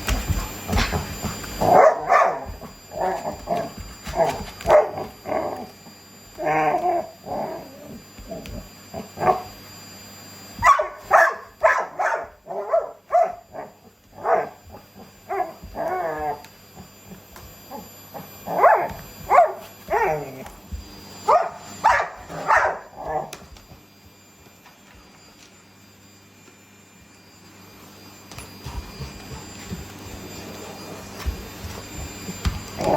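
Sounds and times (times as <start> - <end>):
dog barking: 1.7 - 2.5, 4.7 - 5.0, 10.6 - 14.6, 18.6 - 20.1, 21.3 - 23.0.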